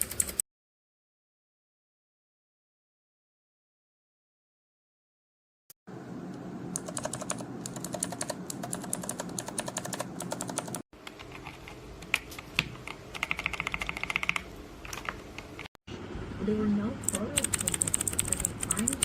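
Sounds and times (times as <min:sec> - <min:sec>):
mechanical keyboard typing: 0:00.0 - 0:00.4, 0:06.8 - 0:11.6, 0:13.1 - 0:15.6, 0:17.0 - 0:19.0.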